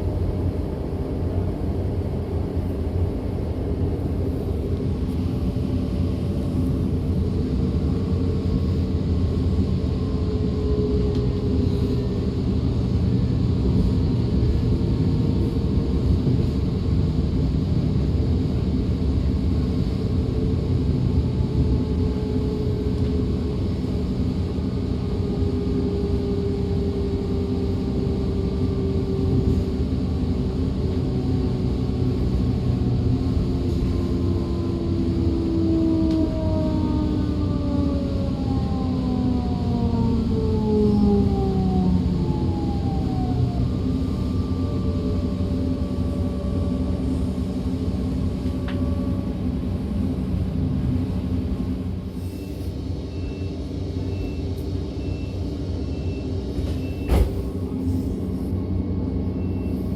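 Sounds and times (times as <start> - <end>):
traction drive whine: 0.0 - 59.9
train rumbling on track: 0.0 - 59.9
rising whine: 20.2 - 55.2.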